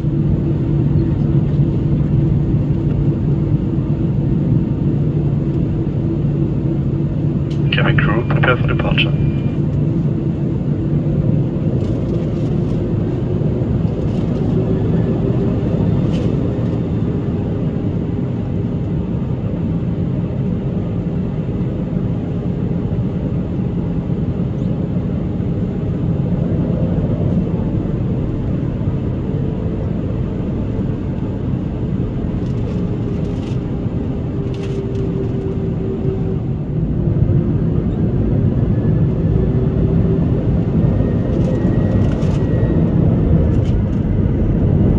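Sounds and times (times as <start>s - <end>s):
airliner cabin engine drone: 0.0s - 44.9s
faint hum tone: 7.5s - 10.5s.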